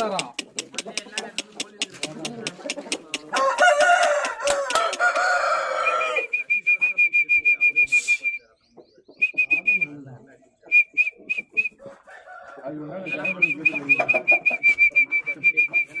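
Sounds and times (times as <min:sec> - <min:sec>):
rooster crowing: 0:03.3 - 0:06.4, 0:11.8 - 0:13.0.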